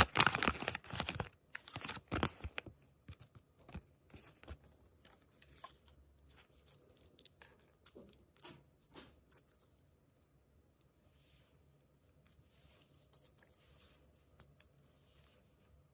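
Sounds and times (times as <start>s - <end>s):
packaging crinkling and tearing: 0.0s - 8.6s.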